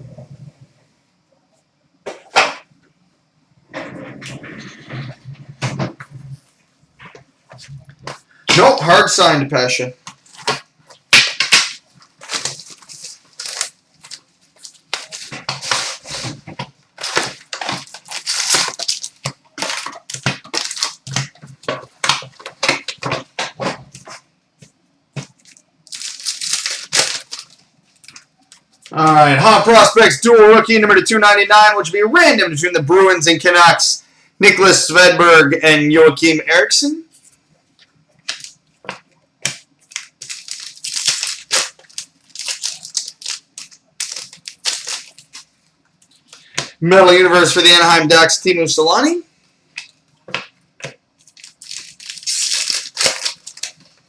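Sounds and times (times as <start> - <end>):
card wrappers tearing and crinkling: 8.0 - 9.3, 10.1 - 24.2, 25.2 - 29.9, 39.4 - 47.8, 51.2 - 54.0.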